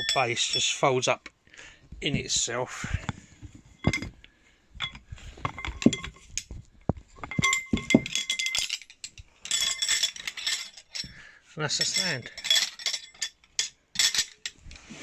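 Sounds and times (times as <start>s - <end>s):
clinking rattle: 0.0s - 0.8s, 3.8s - 4.2s, 4.8s - 6.5s, 7.2s - 14.6s.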